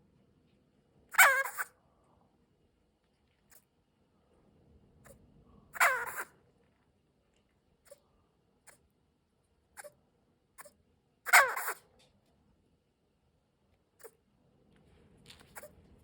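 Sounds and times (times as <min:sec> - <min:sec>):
bushbaby calling: 0:01.1 - 0:01.7, 0:05.8 - 0:06.3, 0:10.6 - 0:11.8.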